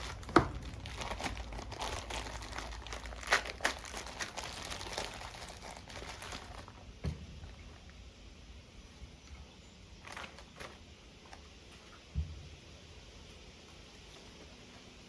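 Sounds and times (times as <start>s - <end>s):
loud plastic crackles: 0.0s - 8.0s, 10.0s - 11.4s
plastic packaging crinkling: 0.0s - 8.0s, 10.0s - 10.9s.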